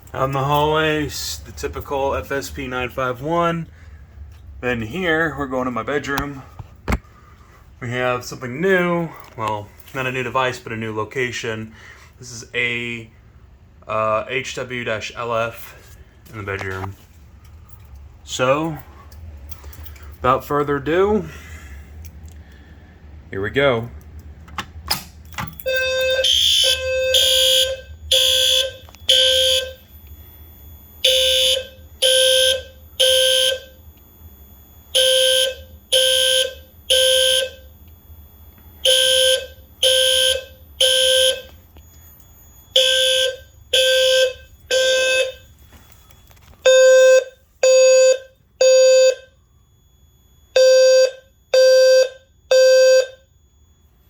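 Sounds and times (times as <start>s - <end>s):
background hum: 0.0s - 54.0s
fire alarm horns pulsing: 0.1s - 6.6s, 25.5s - 54.0s.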